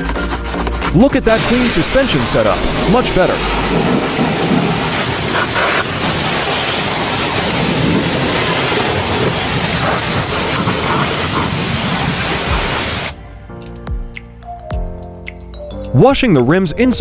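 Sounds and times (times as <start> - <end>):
pressure washer spraying water: 1.0 - 13.2.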